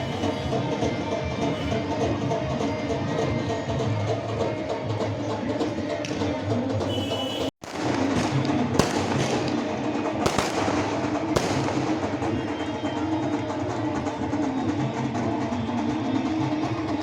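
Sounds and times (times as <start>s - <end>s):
steady background din: 0.0s - 17.0s
fireworks bangs: 6.9s - 13.6s.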